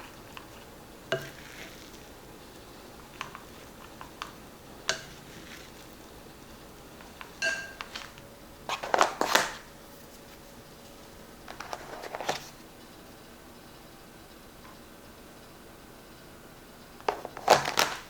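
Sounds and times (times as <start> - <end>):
plastic containers scraping and rattling: 7.8 - 9.6, 11.5 - 12.6, 17.0 - 18.0.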